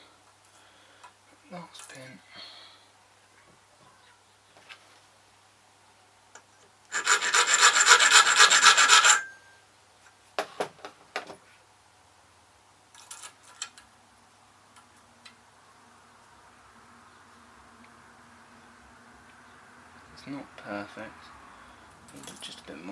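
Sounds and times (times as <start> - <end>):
hand file rasping on metal key: 6.9 - 9.3.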